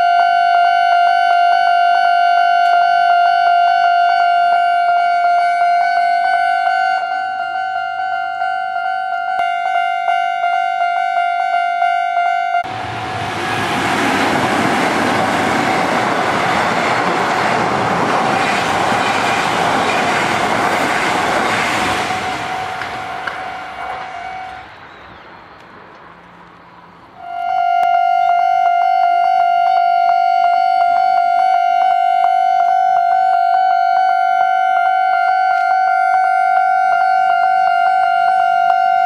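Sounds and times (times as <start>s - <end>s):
level-crossing warning bell: 0.0s - 24.7s, 27.2s - 39.0s
train wheels and running noise: 12.6s - 26.8s.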